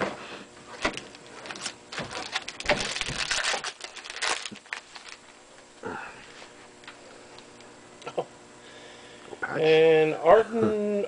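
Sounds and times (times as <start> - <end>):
foil wrapper crinkling: 0.8 - 5.3.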